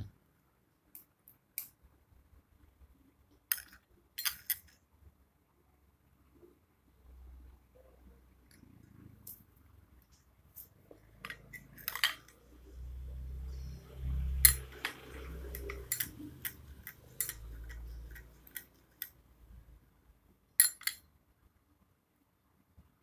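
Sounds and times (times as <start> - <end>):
metal spoon clinking against glass: 14.4 - 19.1, 20.6 - 21.0.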